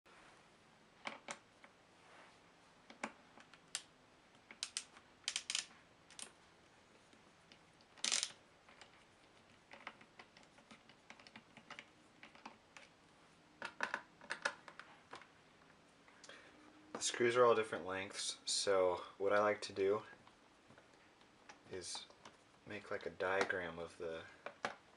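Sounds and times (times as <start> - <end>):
small parts clicking on hard surface: 2.9 - 6.4, 7.5 - 12.9.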